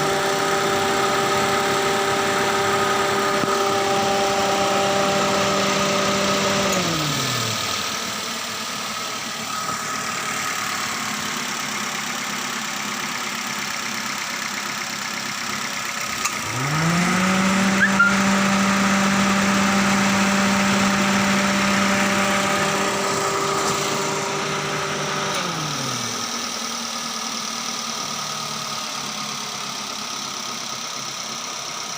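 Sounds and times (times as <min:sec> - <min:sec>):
car engine idling: 0:00.0 - 0:31.9
steady whine: 0:01.3 - 0:12.2.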